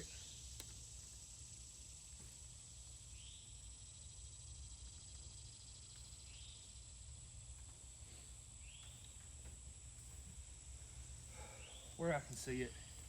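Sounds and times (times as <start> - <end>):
high-pitched insect drone: 0.0 - 7.5.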